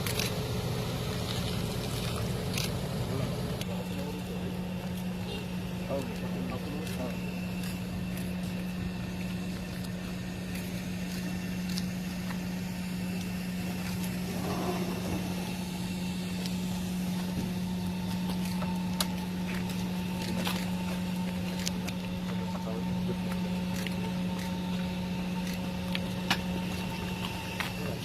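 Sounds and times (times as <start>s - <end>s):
helicopter engine and rotor: 11.3s - 28.0s.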